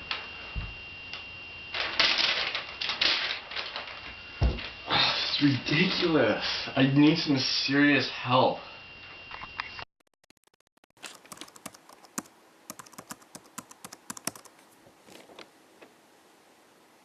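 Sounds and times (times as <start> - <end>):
computer keyboard typing: 10.1 - 14.5.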